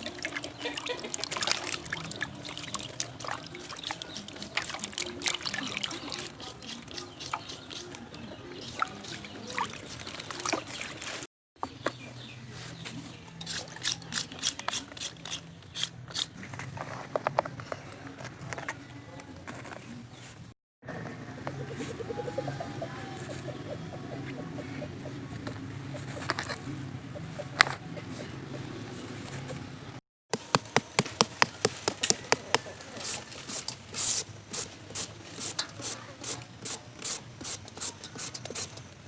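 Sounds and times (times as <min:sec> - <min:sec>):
chewing and crunching: 0:00.0 - 0:11.3.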